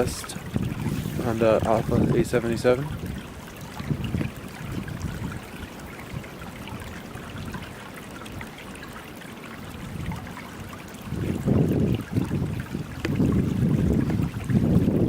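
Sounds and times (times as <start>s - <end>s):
wind rumble on microphone: 0.0s - 8.6s, 9.6s - 15.0s
water flowing and trickling: 0.0s - 15.0s.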